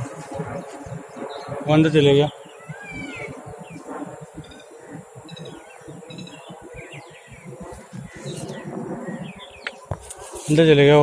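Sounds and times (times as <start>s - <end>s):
birds chirping: 0.0s - 11.0s
low irregular rustling: 3.3s - 11.0s.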